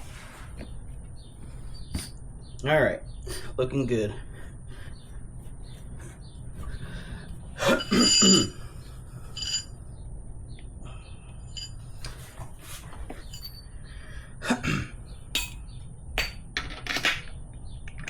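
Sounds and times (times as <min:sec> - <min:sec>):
metal tools clinking: 0:01.6 - 0:02.2, 0:07.6 - 0:09.8, 0:11.4 - 0:13.7, 0:15.4 - 0:17.1
handling noise: 0:11.5 - 0:13.6.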